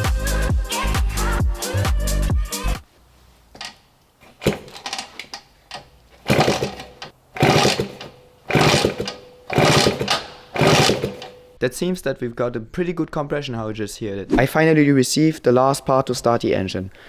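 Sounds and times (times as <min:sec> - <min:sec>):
background music: 0:00.0 - 0:02.9
scooter engine kickstarted: 0:04.3 - 0:11.6.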